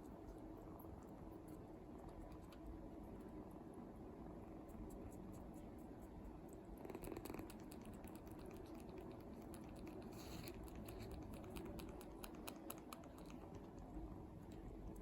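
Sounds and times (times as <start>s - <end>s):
kitten suckling wet clicks: 6.5s - 15.0s
low purr: 6.5s - 15.0s.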